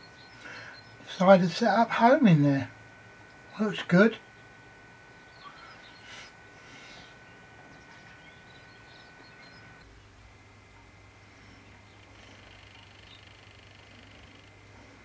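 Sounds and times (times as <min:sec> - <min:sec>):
faint high whine: 0:00.0 - 0:15.0
low hum: 0:00.0 - 0:15.0
small birds chirping: 0:00.0 - 0:15.0.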